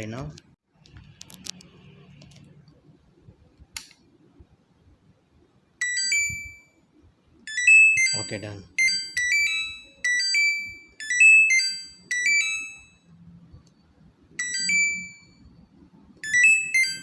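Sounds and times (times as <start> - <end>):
electronic buzzer chime melody: 5.8 - 6.8, 7.5 - 13.1, 14.4 - 15.5, 16.2 - 17.0.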